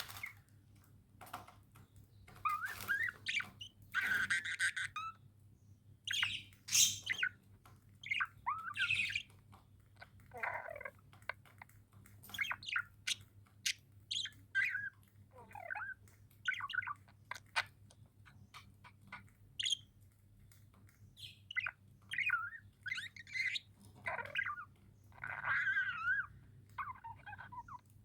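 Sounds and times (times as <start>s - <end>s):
budgerigars chirping: 2.3s - 5.2s, 6.1s - 7.4s, 8.0s - 9.4s, 12.2s - 19.9s, 21.2s - 27.8s.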